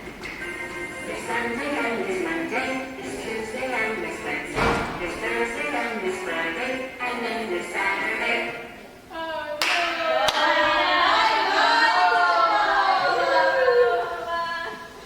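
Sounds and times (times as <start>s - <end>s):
people singing together: 0.8s - 8.8s, 9.8s - 15.0s
hand claps: 9.6s - 10.4s.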